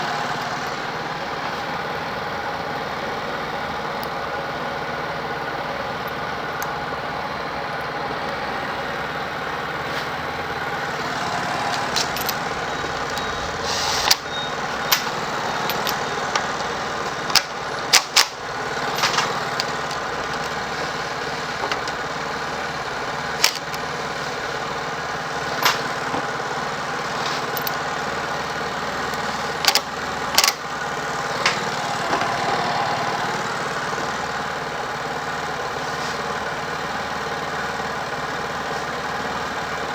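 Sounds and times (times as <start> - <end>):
small engine idling: 0.0 - 39.9
sharp clicks and knocks: 11.0 - 22.2, 25.5 - 26.3.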